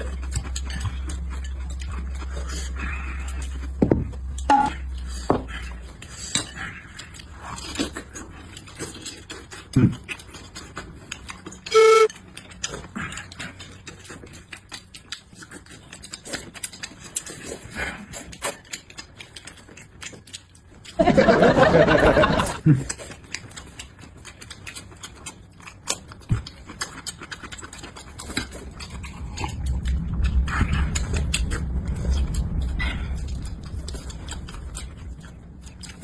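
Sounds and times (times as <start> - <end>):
short pitched tone: 4.5 - 4.8, 11.7 - 12.1.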